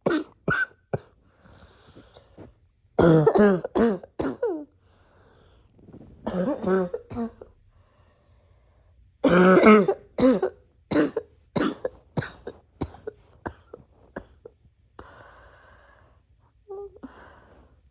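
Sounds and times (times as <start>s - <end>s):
long breath: 15.0s - 16.2s.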